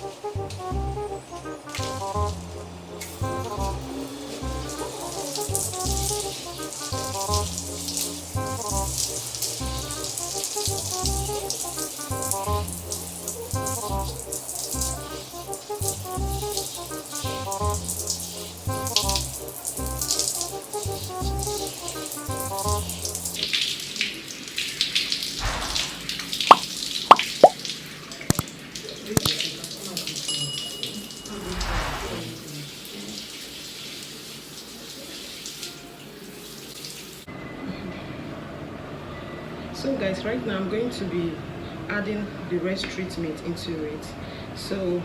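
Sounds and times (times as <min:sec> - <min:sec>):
background music with steady beat: 0:00.0 - 0:23.4
water running from tap: 0:00.0 - 0:37.3.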